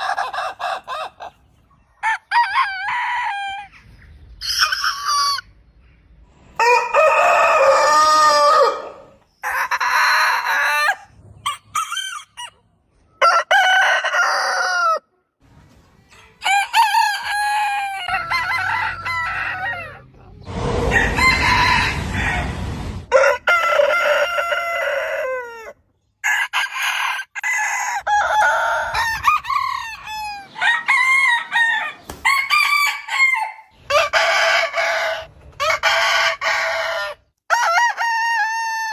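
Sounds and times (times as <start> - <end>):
chickens clucking: 0.0 - 13.2
roosters crowing: 2.0 - 5.5, 6.5 - 12.6, 13.2 - 15.1, 16.4 - 38.9.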